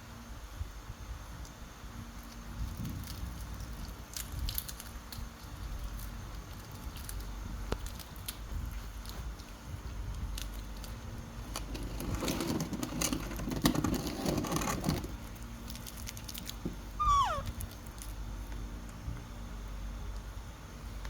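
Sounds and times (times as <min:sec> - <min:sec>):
crackly rustling and crunching: 0:01.2 - 0:21.0
short falling squeak: 0:17.0 - 0:17.5.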